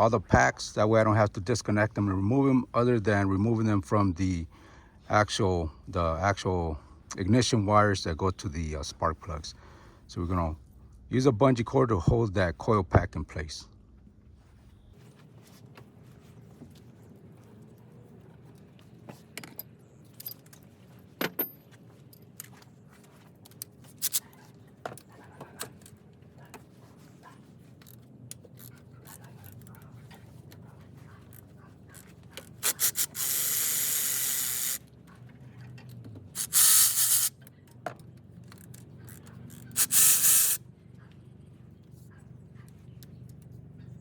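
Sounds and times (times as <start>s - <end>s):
loud hissing blasts: 32.6s - 34.8s, 36.4s - 37.3s, 39.8s - 40.6s.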